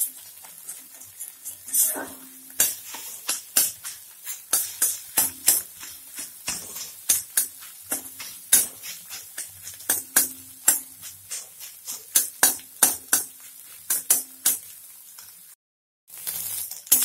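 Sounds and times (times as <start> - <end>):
spatula scraping in a pan: 0.0 - 15.4.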